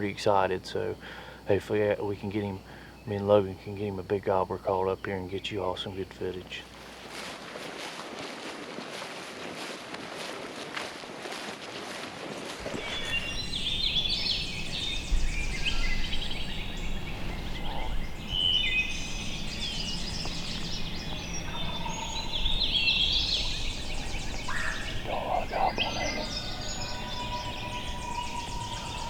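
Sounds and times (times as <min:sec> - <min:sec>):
birds chirping and whistling: 0:12.6 - 0:29.0
turkey gobbling: 0:24.5 - 0:28.0.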